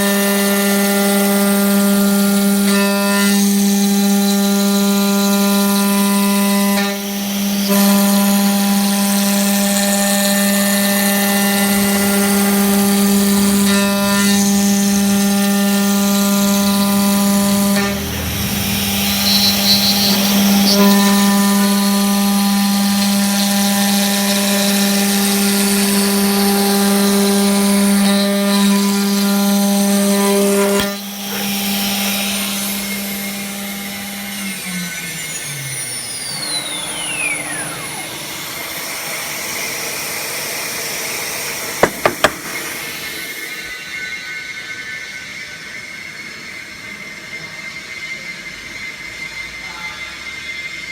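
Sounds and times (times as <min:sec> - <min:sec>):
router spindle whining: 0:00.2 - 0:29.9, 0:31.0 - 0:40.0, 0:41.8 - 0:43.2.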